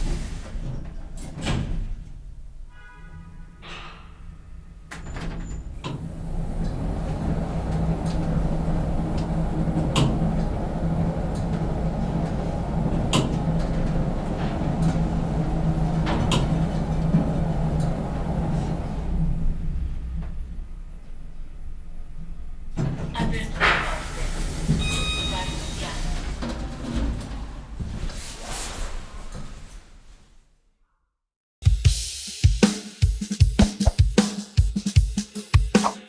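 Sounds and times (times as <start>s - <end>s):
elevator drive humming: 0.0s - 28.4s
elevator doors sliding: 0.0s - 30.5s
elevator chime: 24.6s - 26.4s.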